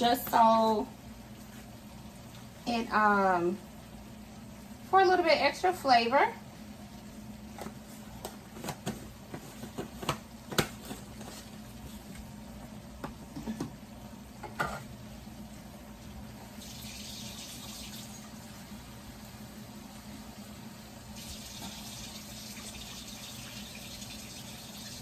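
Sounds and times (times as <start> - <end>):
water running: 10.8 - 25.0.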